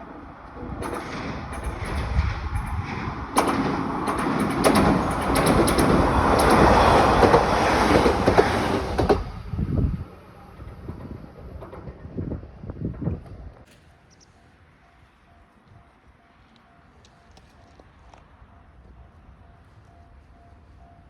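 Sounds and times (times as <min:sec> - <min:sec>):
wheels clicking over rails: 0:00.0 - 0:13.9
train wheels rolling: 0:00.0 - 0:14.2.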